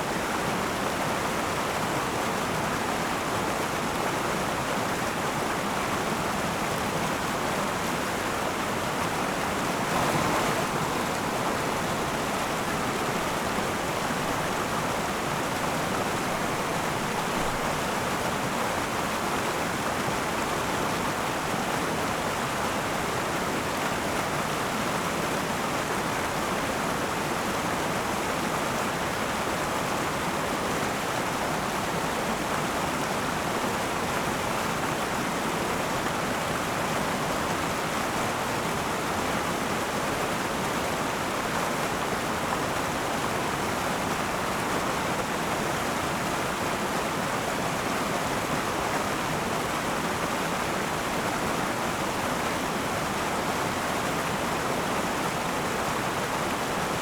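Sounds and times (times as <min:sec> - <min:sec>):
river water rushing over rocks: 0:00.0 - 0:57.0.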